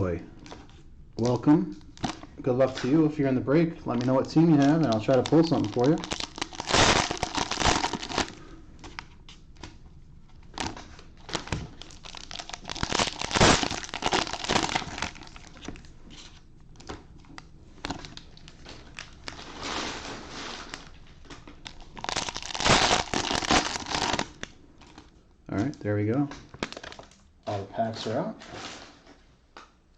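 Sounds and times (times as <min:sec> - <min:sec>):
cellophane card packs crinkling: 0:00.0 - 0:27.3.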